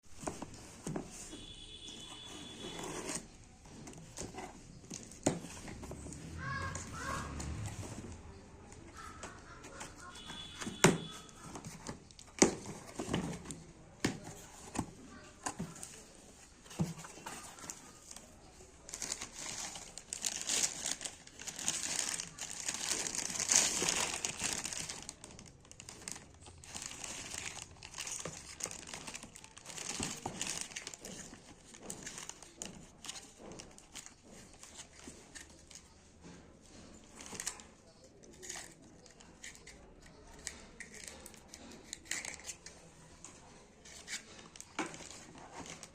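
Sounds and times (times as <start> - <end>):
wrapping crinkling and tearing: 16.7 - 36.0, 37.0 - 45.9.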